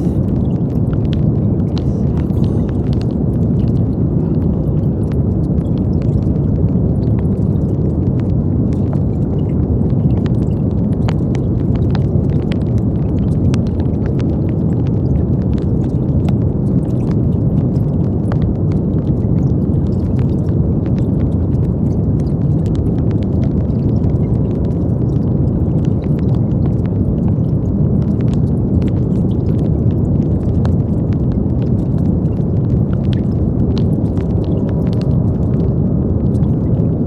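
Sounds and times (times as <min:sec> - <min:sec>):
deep steady hiss: 0:00.0 - 0:05.3.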